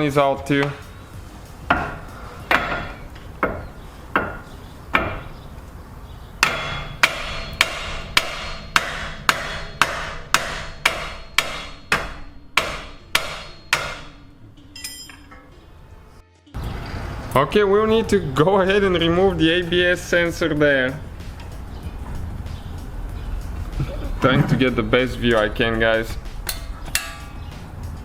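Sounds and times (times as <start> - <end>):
hammer striking metal: 1.7 - 5.3, 6.4 - 15.6, 26.2 - 28.0.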